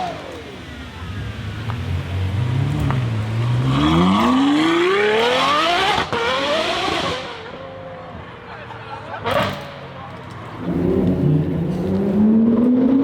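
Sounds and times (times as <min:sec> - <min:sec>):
car engine revving: 0:10.6 - 0:13.0.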